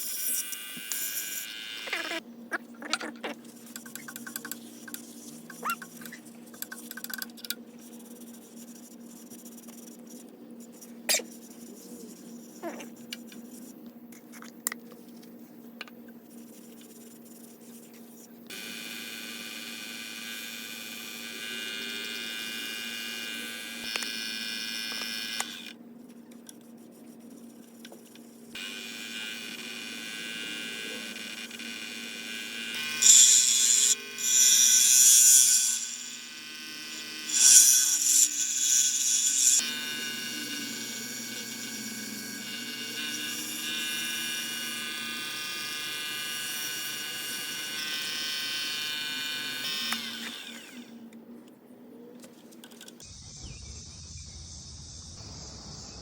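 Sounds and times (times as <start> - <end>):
wood lathe motor hum and whine: 0.3 - 2.2, 18.5 - 25.8, 28.6 - 51.0.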